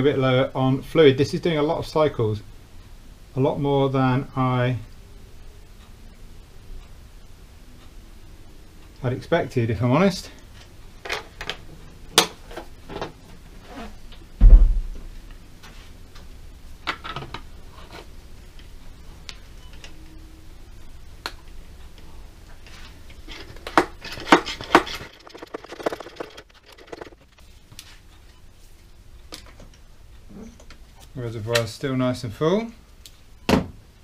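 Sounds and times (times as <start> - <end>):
heavy thump: 14.4 - 15.2
clicks and knocks: 23.5 - 27.4.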